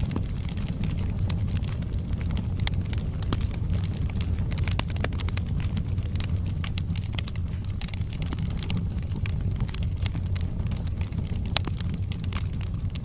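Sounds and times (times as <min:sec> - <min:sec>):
burning wood crackling and popping: 0:00.0 - 0:13.0
flames rumbling: 0:00.0 - 0:13.0.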